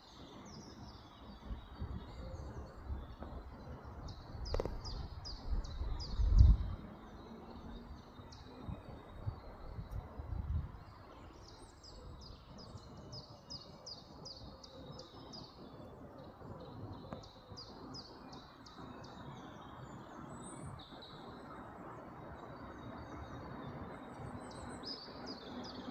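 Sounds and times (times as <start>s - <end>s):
small bird chirping: 0.0s - 9.8s
steady background noise: 0.0s - 25.9s.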